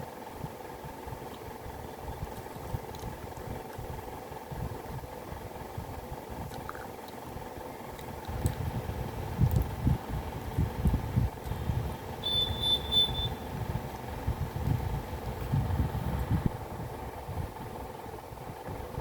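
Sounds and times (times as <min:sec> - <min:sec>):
faint steady hum: 0:00.0 - 0:19.0
short high pulsing tone: 0:12.2 - 0:13.5.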